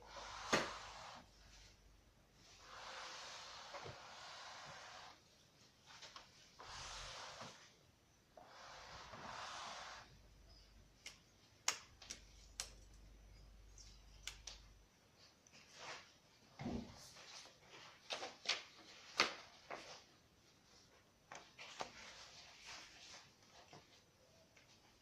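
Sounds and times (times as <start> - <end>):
soft hissing rushes: 0.0 - 7.8, 8.4 - 10.6.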